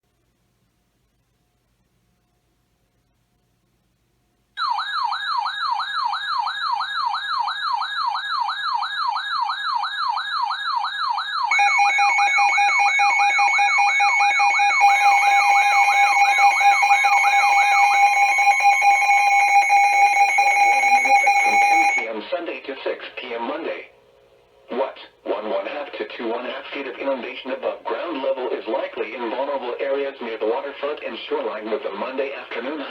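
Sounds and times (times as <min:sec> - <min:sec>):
electronic siren warbling: 0:04.6 - 0:22.1
steady alert tone: 0:11.5 - 0:22.1.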